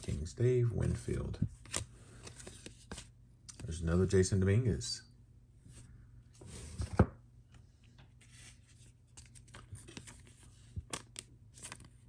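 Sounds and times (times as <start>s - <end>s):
cards rubbing and rustling: 0.0s - 3.1s, 8.2s - 12.0s.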